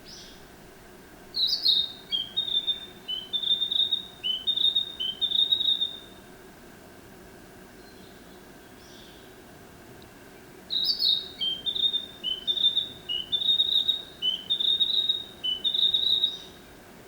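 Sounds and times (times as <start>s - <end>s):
bird singing whistled notes: 1.4s - 6.2s, 10.7s - 16.7s.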